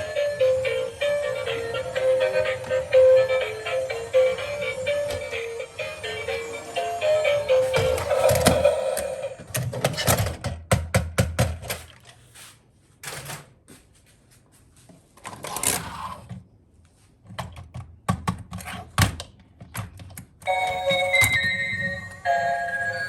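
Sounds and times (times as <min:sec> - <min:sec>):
tinkling electronic tune: 0:00.0 - 0:09.3, 0:20.5 - 0:23.0
rustling scrapes: 0:12.1 - 0:13.0.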